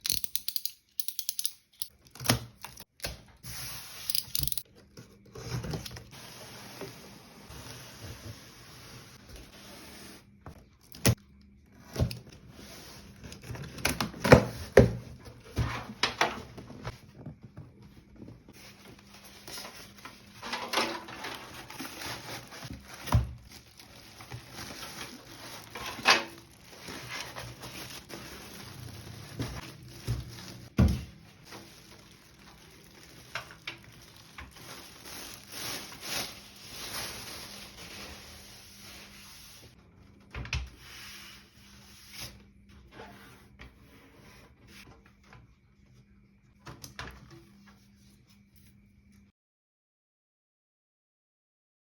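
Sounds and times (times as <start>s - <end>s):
packaging rustling: 18.1s - 39.6s.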